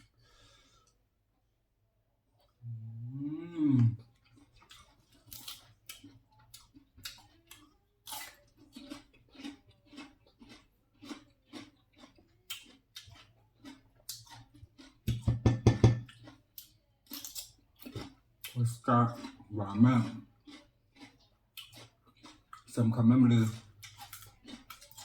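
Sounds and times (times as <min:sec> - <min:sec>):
person humming: 0:02.6 - 0:04.0
person chewing close to microphone: 0:03.6 - 0:25.0.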